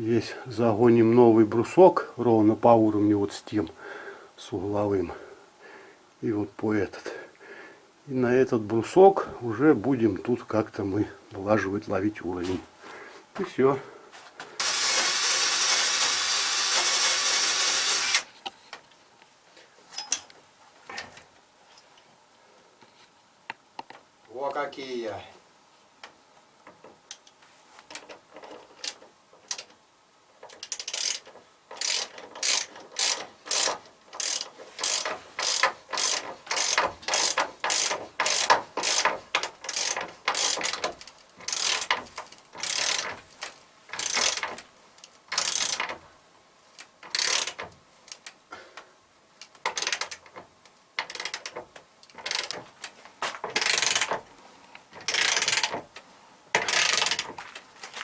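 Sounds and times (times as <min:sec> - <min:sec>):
hand saw cutting wood: 0:14.6 - 0:18.3, 0:31.8 - 0:42.0.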